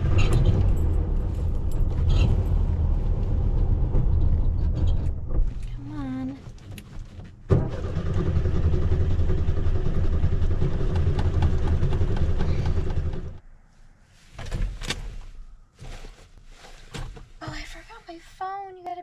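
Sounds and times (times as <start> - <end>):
car engine cranking on starter: 7.5 - 13.4.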